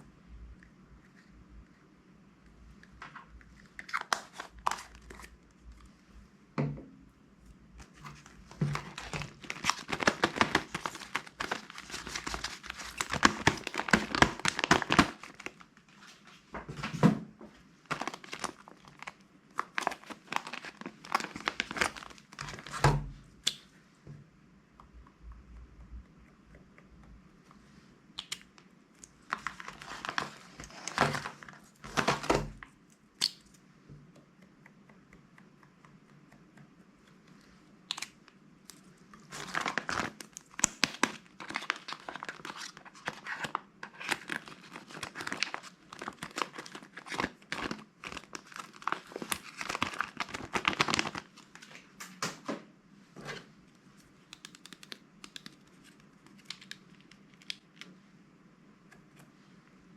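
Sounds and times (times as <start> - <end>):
plastic bags crinkling and tearing: 3.7 - 5.3, 8.1 - 15.7, 17.8 - 23.0, 29.2 - 32.7, 39.2 - 51.8.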